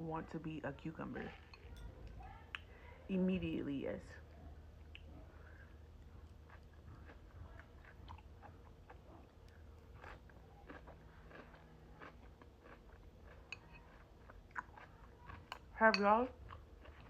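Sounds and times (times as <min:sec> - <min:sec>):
person chewing crunchy food: 0:04.8 - 0:17.0.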